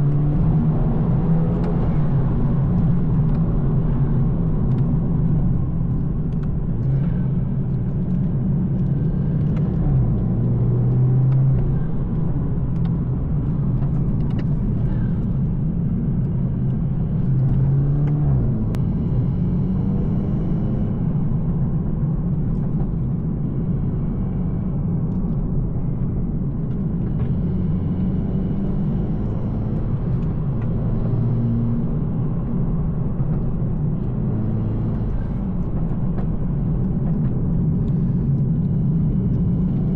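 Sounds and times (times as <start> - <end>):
car engine and exhaust: 0.0 - 39.9
road rumble: 0.0 - 39.9.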